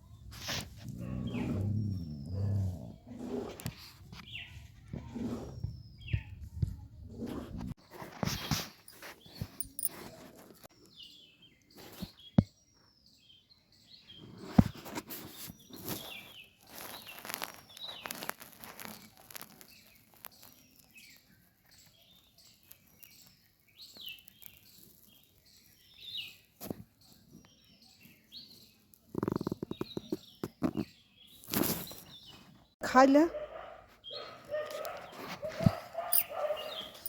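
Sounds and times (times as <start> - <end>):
small bird chirping: 8.4 - 32.8, 34.0 - 37.0
scuffling noises: 33.3 - 37.0.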